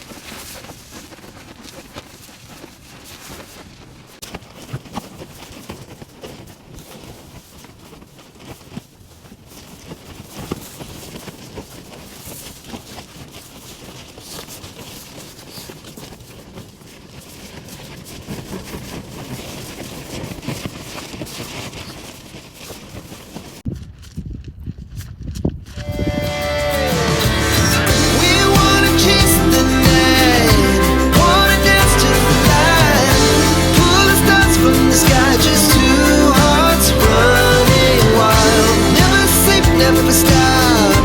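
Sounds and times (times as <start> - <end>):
strong wind blowing: 23.7 - 29.4.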